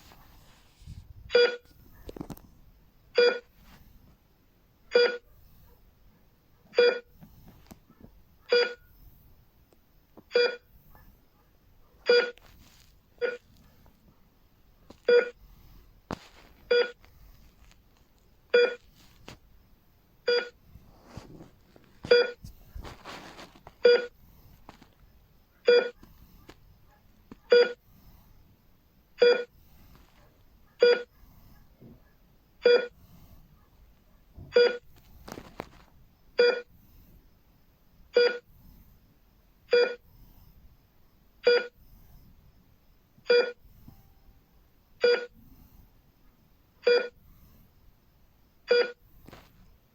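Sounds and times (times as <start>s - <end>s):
heart rate monitor beeping: 1.3s - 2.0s, 3.1s - 3.6s, 4.9s - 5.3s, 6.7s - 7.3s, 8.4s - 9.0s, 10.3s - 11.0s, 12.0s - 12.5s, 13.1s - 13.8s, 14.9s - 19.6s, 20.2s - 28.2s, 29.2s - 31.6s, 32.6s - 33.3s, 34.4s - 35.7s, 36.4s - 37.1s, 38.1s - 38.9s, 39.6s - 45.8s, 46.8s - 47.6s, 48.5s - 49.9s.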